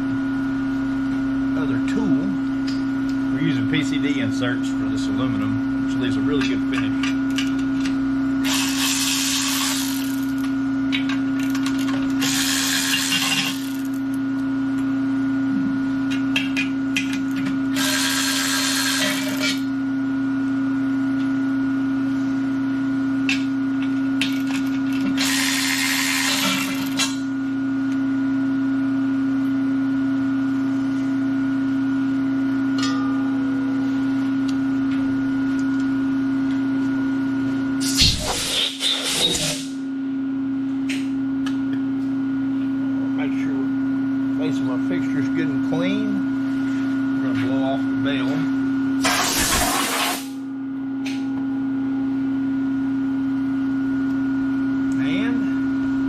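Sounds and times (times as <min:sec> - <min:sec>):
metal lathe humming: 0:08.4 - 0:10.6, 0:11.4 - 0:14.2, 0:17.7 - 0:19.8, 0:24.5 - 0:27.3.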